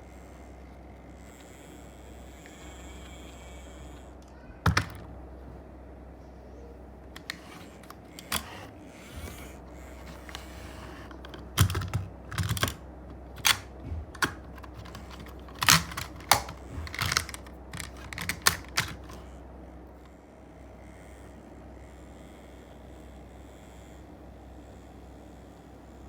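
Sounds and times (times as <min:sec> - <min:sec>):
plastic toy vehicles clattering: 0:04.7 - 0:05.1, 0:07.1 - 0:19.2.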